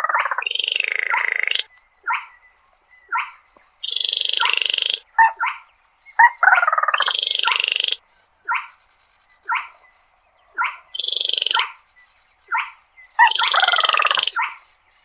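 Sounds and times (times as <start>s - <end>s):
bird sharp call notes: 3.1s - 5.6s, 12.5s - 14.6s.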